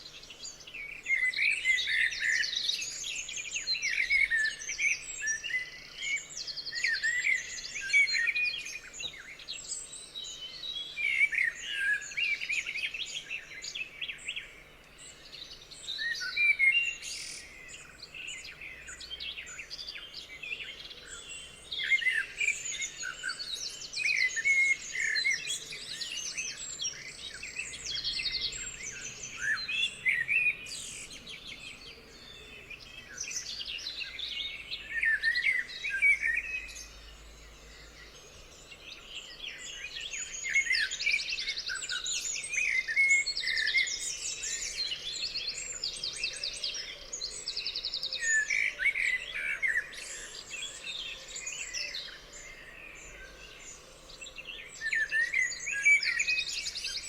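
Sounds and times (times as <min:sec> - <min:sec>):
birds chirping and trilling: 0:00.0 - 0:57.0.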